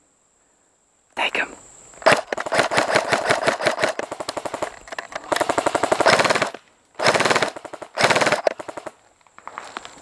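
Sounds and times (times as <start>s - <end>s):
airsoft gun firing bursts: 2.0s - 9.0s.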